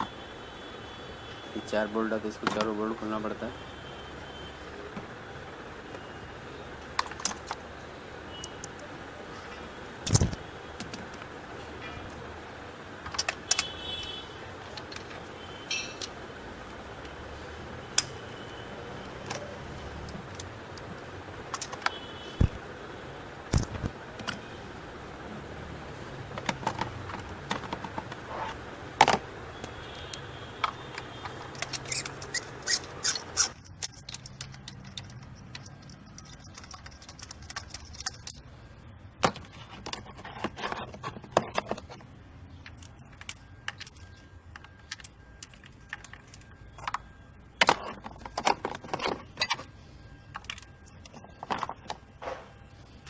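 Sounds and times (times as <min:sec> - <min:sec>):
steady background hum: 0:00.0 - 0:53.0.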